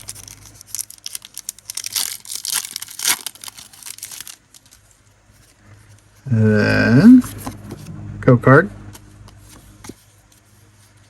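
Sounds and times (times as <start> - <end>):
foil wrapper crinkling and tearing: 0.0 - 5.0.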